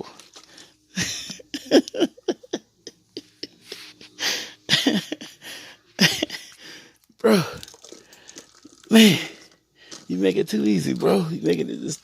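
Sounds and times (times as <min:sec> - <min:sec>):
person breathy vocal bursts: 0:07.2 - 0:07.8.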